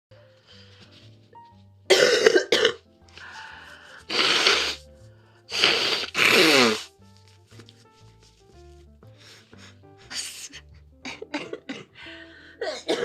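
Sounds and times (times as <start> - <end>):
woman coughing hard: 1.9 - 2.8, 11.1 - 11.9, 12.6 - 13.0.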